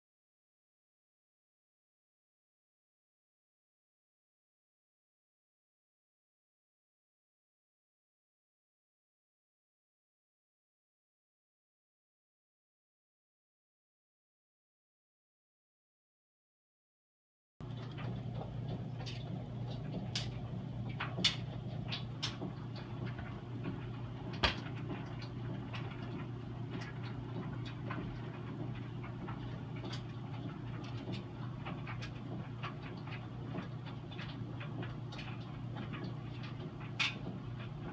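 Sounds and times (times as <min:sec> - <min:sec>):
dryer humming: 0:17.6 - 0:37.9.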